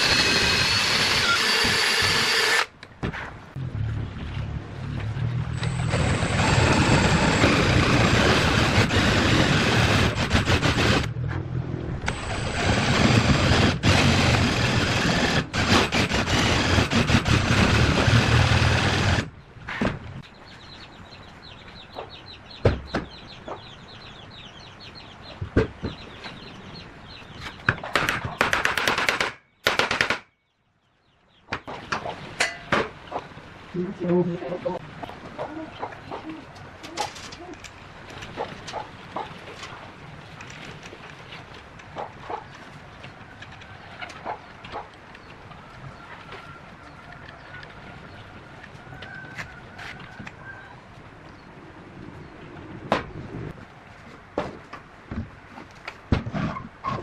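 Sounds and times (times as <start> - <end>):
power tool running loudly: 0.0 - 2.7, 5.9 - 11.1, 12.1 - 19.3
chickens clucking: 21.8 - 22.2, 23.3 - 23.8, 34.1 - 37.6, 43.4 - 50.5.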